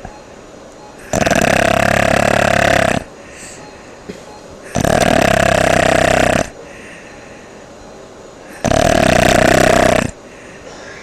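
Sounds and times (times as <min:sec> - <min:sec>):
person snoring with flutter: 0:01.1 - 0:03.1, 0:04.7 - 0:06.6, 0:08.5 - 0:10.2.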